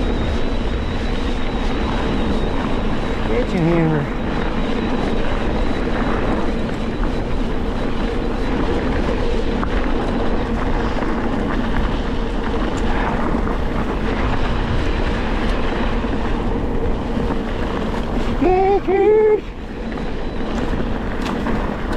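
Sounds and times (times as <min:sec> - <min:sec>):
wind rush and rumble: 0:00.0 - 0:21.9.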